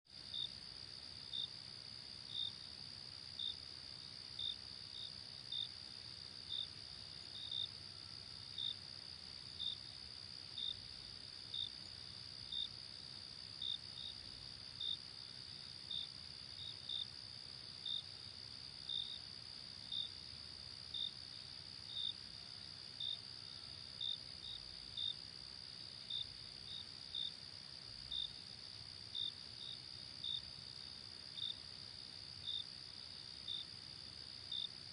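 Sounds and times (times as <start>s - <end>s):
loud cricket chirping: 7.3s - 8.8s, 10.6s - 12.8s, 21.8s - 27.4s, 28.1s - 34.7s.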